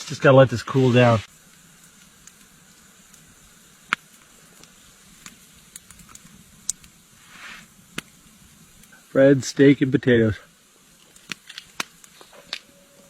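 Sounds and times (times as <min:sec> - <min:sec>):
campfire crackling: 0:00.0 - 0:13.0
soft rush: 0:07.1 - 0:07.7.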